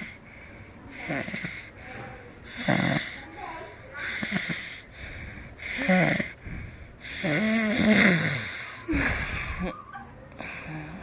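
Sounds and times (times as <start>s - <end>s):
person snoring: 7.1s - 9.6s.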